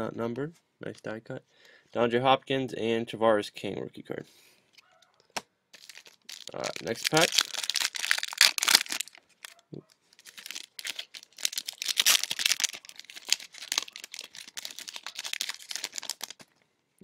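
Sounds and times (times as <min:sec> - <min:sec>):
card pack wrapper crinkling tearing: 0:05.7 - 0:16.6.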